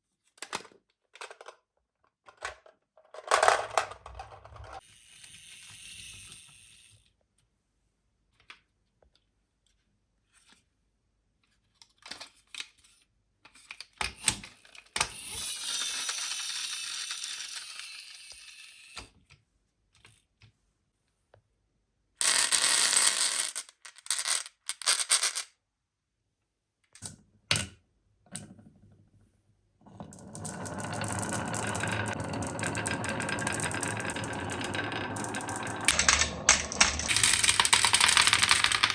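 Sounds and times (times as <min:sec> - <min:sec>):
marbles rolling on track: 0:03.3 - 0:07.0, 0:15.0 - 0:19.0, 0:29.9 - 0:38.9
marbles clicking and clattering: 0:29.9 - 0:38.9.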